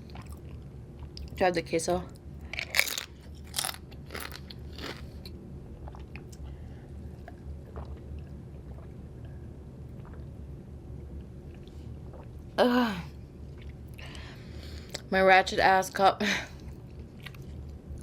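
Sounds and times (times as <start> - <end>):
steady low hum: 0.0 - 18.0
crisp crunching bites: 2.6 - 5.2.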